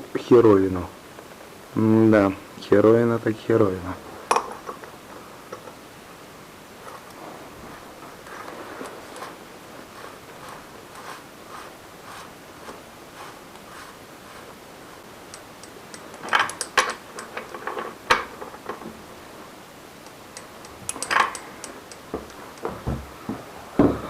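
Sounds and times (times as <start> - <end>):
faint regular ticking: 15.2 - 17.6, 20.0 - 22.7.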